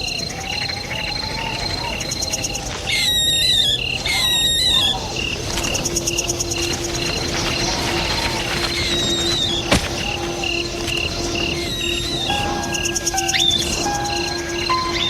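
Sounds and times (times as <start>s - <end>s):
crickets chirping: 0.0s - 15.0s
wavering bird calls: 0.0s - 15.0s
low held tone: 9.1s - 15.0s.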